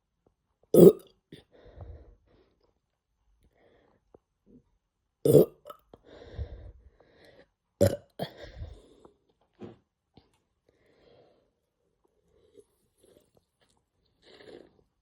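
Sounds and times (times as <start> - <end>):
person burping: 0.8 - 1.1, 5.2 - 5.8, 7.8 - 8.4
breathy sounds: 6.0 - 7.5.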